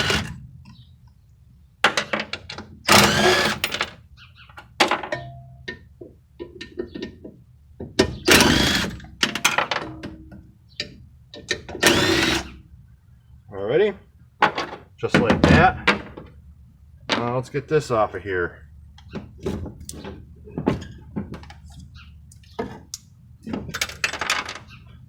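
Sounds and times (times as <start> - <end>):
power driver bursts: 2.9 - 3.7, 11.8 - 12.6
metal knocks and clatter: 19.2 - 21.7, 22.5 - 24.8.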